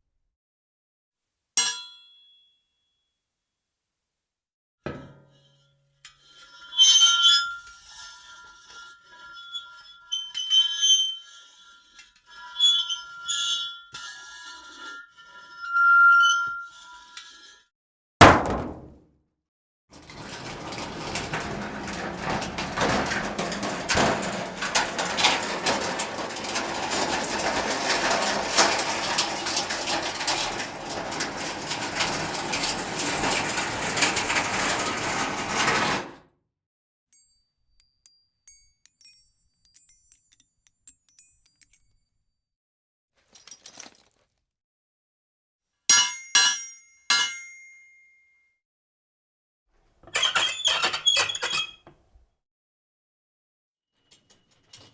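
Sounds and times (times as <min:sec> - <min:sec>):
ringing metal strikes: 0:01.6 - 0:02.5, 0:45.9 - 0:48.2
dense metallic clatter: 0:20.0 - 0:36.2.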